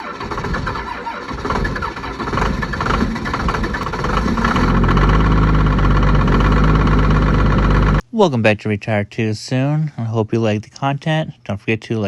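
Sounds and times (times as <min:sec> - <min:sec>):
engine starting and idling: 0:00.0 - 0:08.0.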